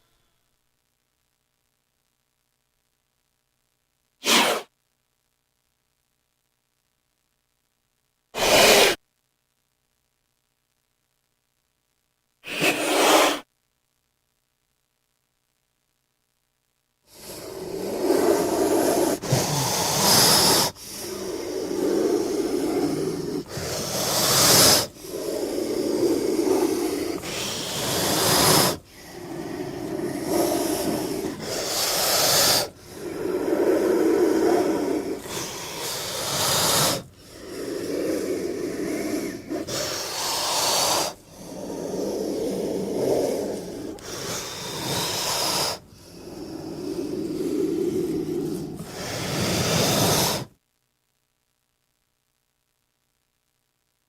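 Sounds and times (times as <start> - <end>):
snake hissing: 4.2 - 4.7, 8.4 - 9.0, 12.4 - 13.4, 17.1 - 50.5.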